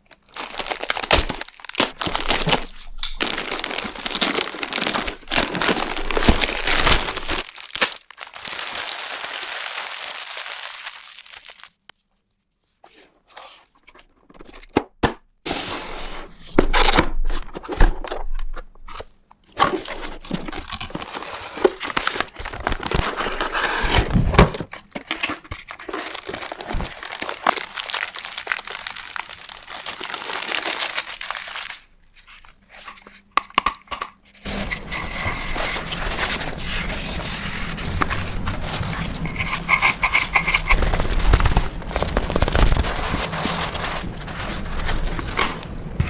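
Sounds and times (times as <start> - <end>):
packaging crinkling and tearing: 0.0 - 12.0, 16.8 - 33.2, 34.4 - 46.0
low hum: 34.5 - 46.0.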